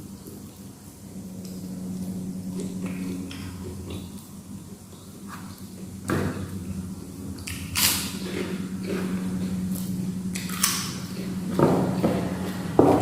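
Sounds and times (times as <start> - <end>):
steady low hum: 0.0 - 13.0
sharp eating noises: 7.4 - 11.4.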